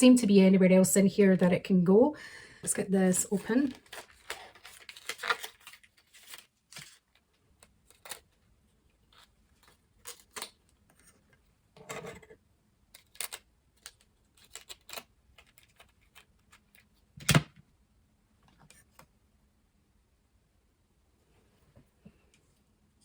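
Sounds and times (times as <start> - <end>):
crackly plastic rustle: 3.3 - 11.3
plastic packaging clicks and crinkles: 3.4 - 8.4, 12.9 - 17.0.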